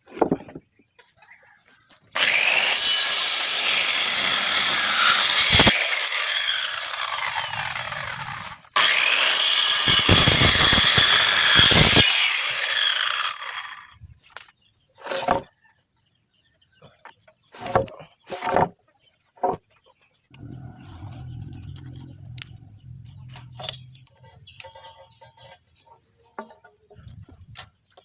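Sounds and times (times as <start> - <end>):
power saw cutting wood: 2.1 - 13.9.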